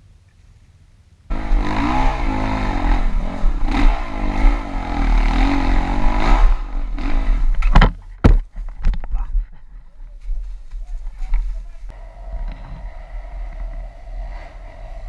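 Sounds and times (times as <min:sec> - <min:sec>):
motorcycle engine revving: 0:01.3 - 0:07.8, 0:11.9 - 0:15.0.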